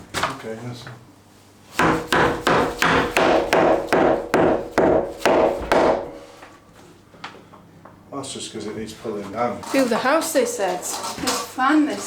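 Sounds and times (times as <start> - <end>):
hammer blows on timber: 1.8 - 6.4.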